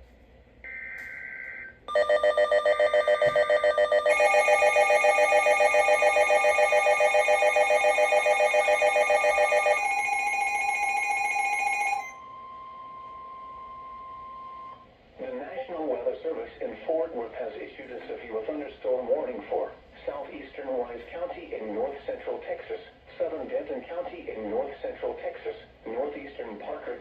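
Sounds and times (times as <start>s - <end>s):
rapidly pulsing alarm beeps: 0.7s - 14.8s.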